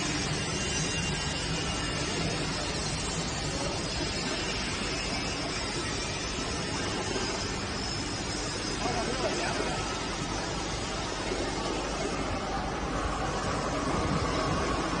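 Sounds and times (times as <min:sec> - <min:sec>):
furnace plant running: 0:00.0 - 0:15.0.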